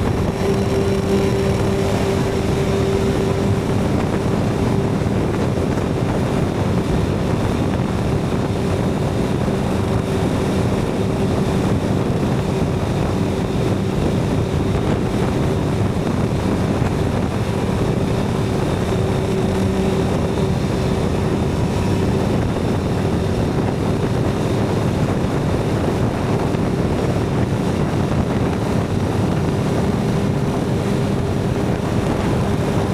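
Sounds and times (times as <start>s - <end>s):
motorcycle engine cruising: 0.0s - 32.9s
wind on microphone: 0.0s - 32.9s.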